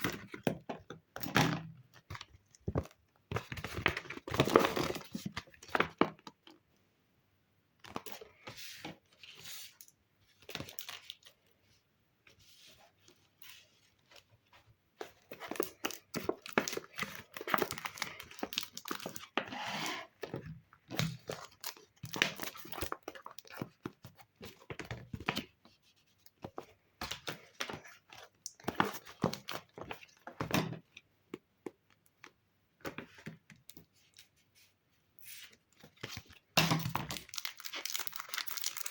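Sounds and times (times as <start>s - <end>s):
paper crinkling and rustling: 12.3s - 30.4s, 33.2s - 38.9s.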